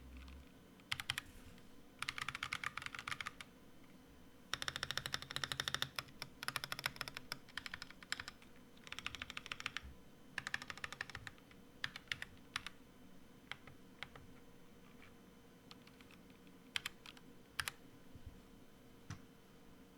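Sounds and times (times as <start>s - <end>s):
mechanical keyboard typing: 0.1s - 1.2s, 2.0s - 3.4s, 4.5s - 9.8s, 10.4s - 12.8s, 15.7s - 17.8s.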